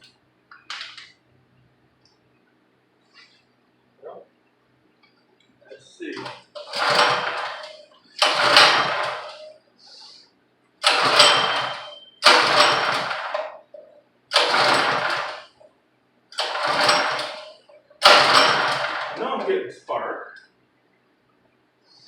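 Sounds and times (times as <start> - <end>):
small engine cranking: 6.2 - 9.4, 10.8 - 13.4, 14.3 - 15.5, 16.4 - 19.5
recoil starter pulls: 6.2 - 9.5, 10.8 - 13.6, 14.3 - 15.6, 16.4 - 19.6.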